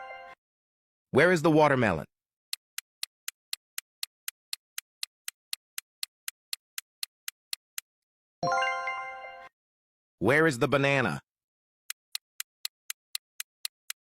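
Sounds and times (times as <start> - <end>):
clock ticking: 2.5 - 8.0, 11.9 - 14.0.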